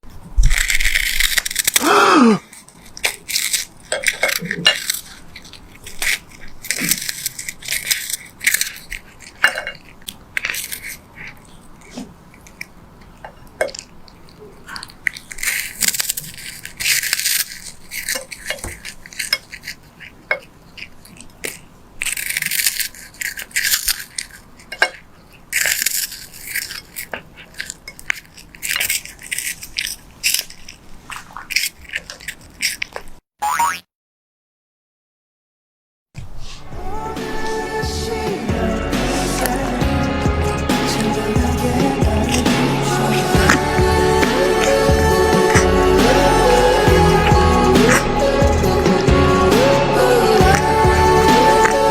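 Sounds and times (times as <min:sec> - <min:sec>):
cat chewing with crisp crunches: 0:00.0 - 0:33.2, 0:36.9 - 0:51.9.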